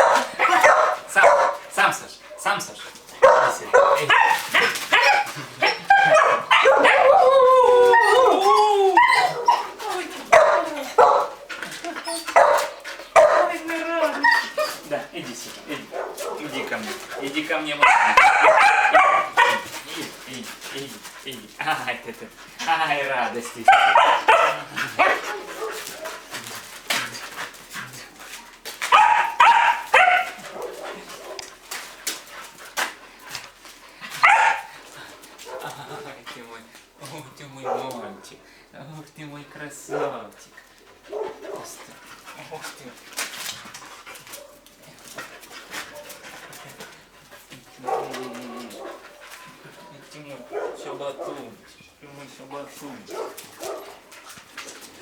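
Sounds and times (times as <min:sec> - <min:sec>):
dog howling: 0:00.0 - 0:01.6, 0:03.2 - 0:14.9, 0:15.8 - 0:19.8, 0:23.7 - 0:26.2
dogs barking and yipping: 0:00.0 - 0:36.0, 0:37.6 - 0:38.4, 0:39.7 - 0:55.0.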